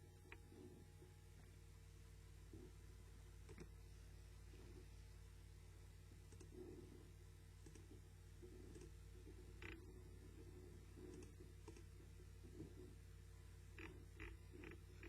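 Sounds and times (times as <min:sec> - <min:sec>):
steady low hum: 0:00.0 - 0:15.0
faint clicks: 0:03.4 - 0:03.8, 0:06.3 - 0:06.6, 0:07.6 - 0:08.0, 0:11.0 - 0:12.8.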